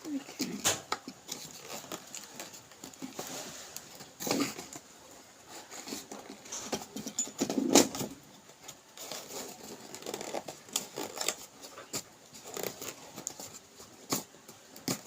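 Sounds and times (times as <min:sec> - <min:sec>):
rustling and knocks of handling: 0:00.0 - 0:15.0.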